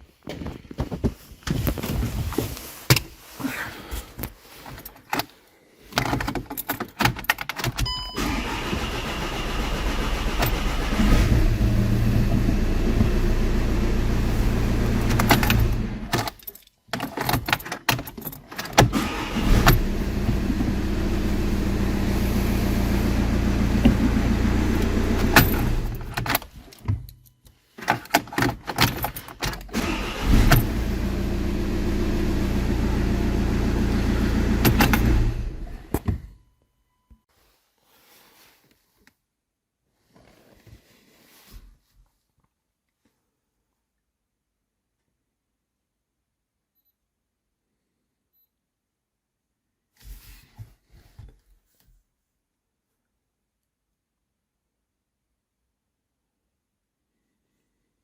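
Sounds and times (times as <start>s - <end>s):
diesel engine starting and idling: 7.9s - 16.1s, 18.9s - 26.2s, 29.7s - 35.9s.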